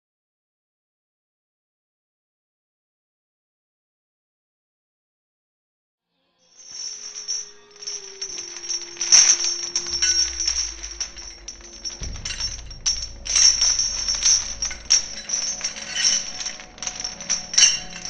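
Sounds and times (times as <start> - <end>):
clinking metallic percussion: 6.6 - 18.0.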